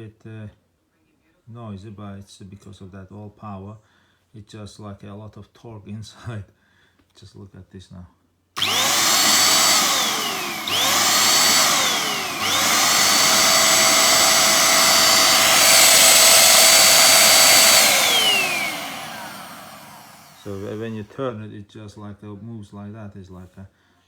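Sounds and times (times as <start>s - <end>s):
vacuum cleaner motor whining: 8.6s - 21.2s.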